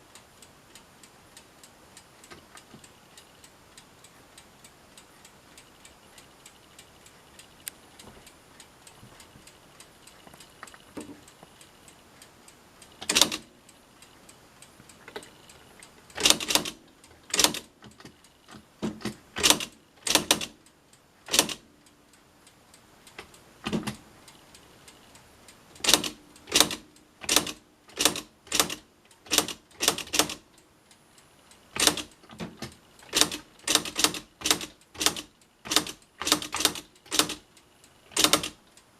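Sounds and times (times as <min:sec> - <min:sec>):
faint light ticks: 0:00.0 - 0:19.3, 0:20.0 - 0:27.1
typewriter print hammer strikes: 0:13.0 - 0:13.5, 0:16.2 - 0:18.2, 0:18.8 - 0:20.6, 0:21.3 - 0:21.6, 0:23.6 - 0:24.0, 0:25.8 - 0:30.4, 0:31.8 - 0:37.4, 0:38.1 - 0:38.6.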